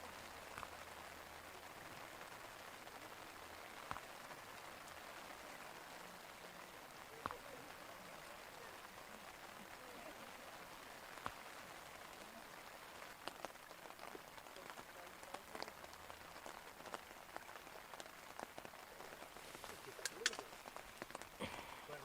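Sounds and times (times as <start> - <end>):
raindrops ticking near microphone: 0.0 - 22.0
torrential rain hiss: 0.0 - 22.0.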